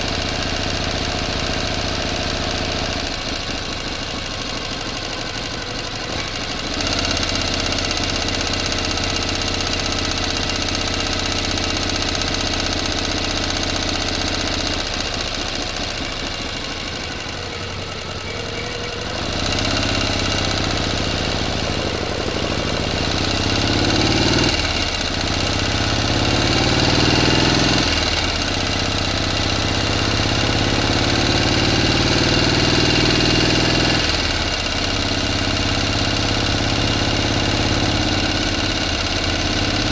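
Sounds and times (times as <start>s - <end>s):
engine running and revving: 0.0s - 39.9s.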